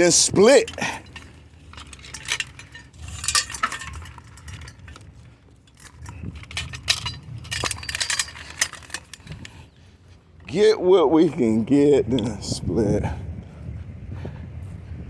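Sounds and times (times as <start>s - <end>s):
scrap metal clinking and rattling: 0.0s - 10.7s.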